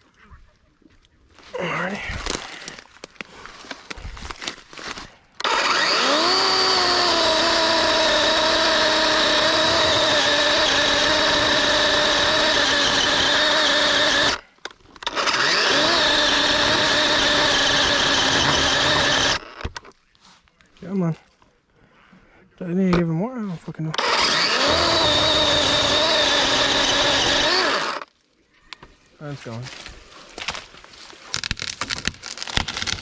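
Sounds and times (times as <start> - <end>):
electric chainsaw motor whine: 5.4 - 14.4, 15.0 - 19.7, 24.0 - 28.1.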